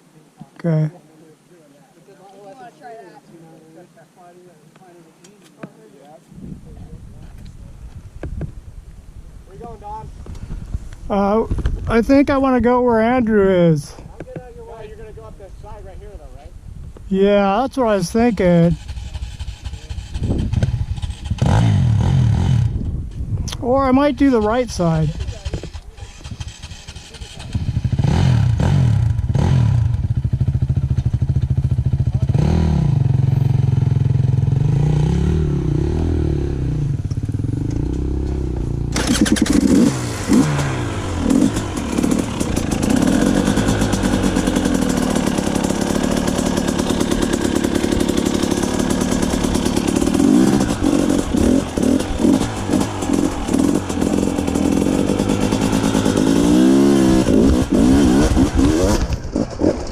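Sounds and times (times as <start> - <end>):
dirt bike engines revving: 17.4 - 22.8, 23.6 - 59.9
raspy engine sound: 31.3 - 59.9.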